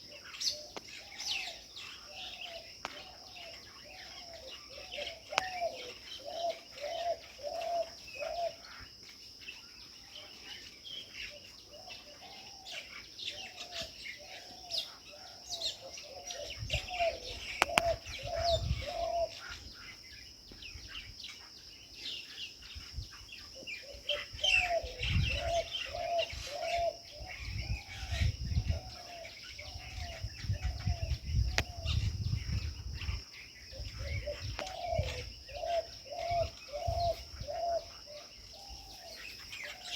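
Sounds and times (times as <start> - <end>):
birds chirping: 0.0 - 39.9
high insect drone: 0.0 - 39.9
wind rumbling on microphone: 16.3 - 19.8, 22.7 - 23.5, 24.1 - 38.0.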